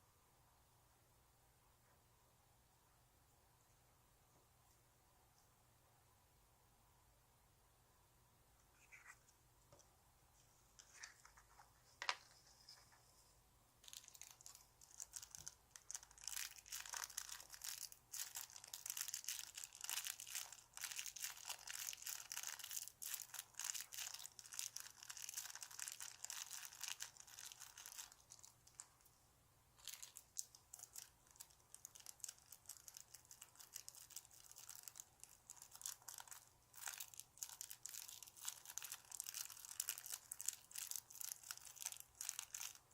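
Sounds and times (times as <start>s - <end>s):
foam toy crinkling: 10.7s - 13.2s, 13.8s - 29.1s, 29.8s - 42.9s.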